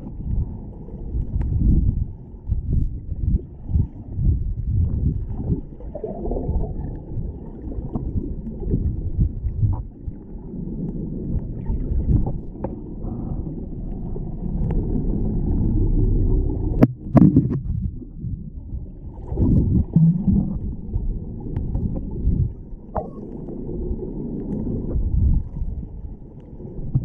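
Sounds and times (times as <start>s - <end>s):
muffled water sloshing and gurgling: 0.0s - 27.0s
faint clicks: 9.6s - 17.7s, 21.0s - 27.0s.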